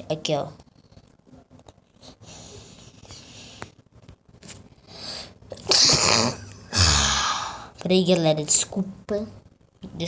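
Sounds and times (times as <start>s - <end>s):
breathy intakes: 6.7s - 7.8s.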